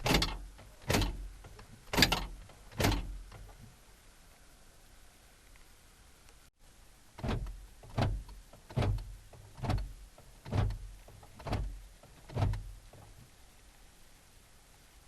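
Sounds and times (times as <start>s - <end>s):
door lock actuator clunking: 0.0s - 3.5s, 7.2s - 12.7s.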